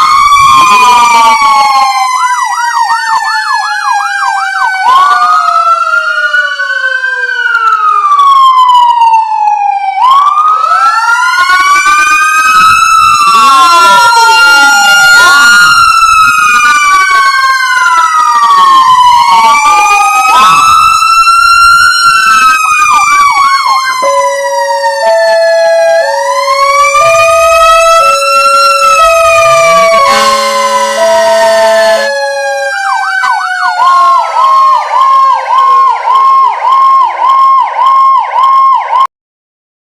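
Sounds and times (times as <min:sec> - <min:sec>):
emergency vehicle sirens wailing: 0:00.0 - 0:39.1
fast yelp siren: 0:00.0 - 0:39.1
two-tone hi-lo siren: 0:00.0 - 0:39.1
steady horn blast: 0:24.0 - 0:32.7.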